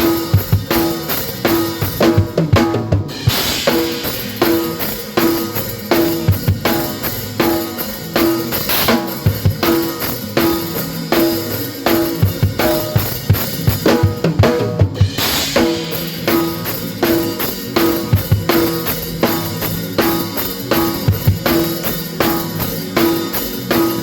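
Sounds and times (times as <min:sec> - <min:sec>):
drum fill: 0:00.0 - 0:24.0
gospel band playing: 0:00.0 - 0:24.0
cymbal wash: 0:03.2 - 0:13.6.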